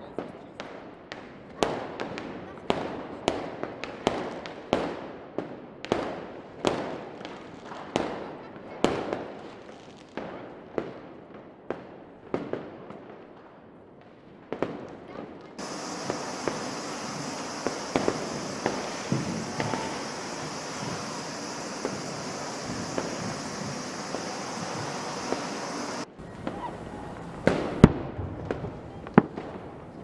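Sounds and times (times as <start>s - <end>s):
fireworks crackling and pops: 0.2s - 30.0s
fireworks bangs echoing: 15.6s - 30.0s.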